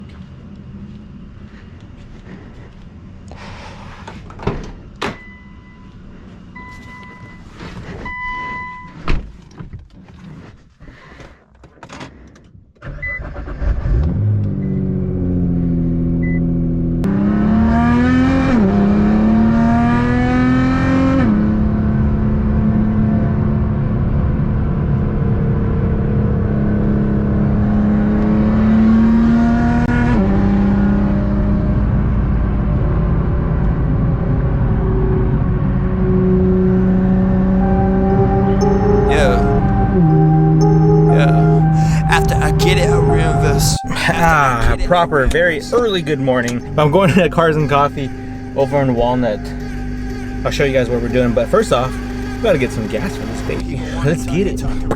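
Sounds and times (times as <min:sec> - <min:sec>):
car engine starting and idling: 0:12.0 - 0:20.5, 0:21.4 - 0:54.9
electronic chime beeps: 0:37.5 - 0:47.4.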